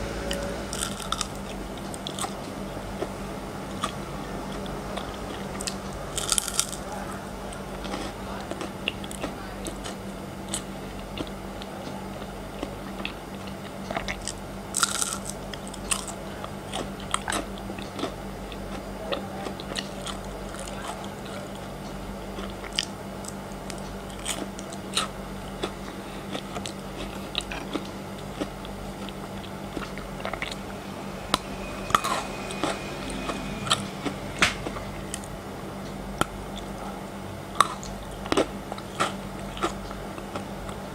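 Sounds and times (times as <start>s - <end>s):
steady low hum: 0.0s - 40.9s
chewing with crunches: 0.2s - 30.7s, 37.5s - 40.9s.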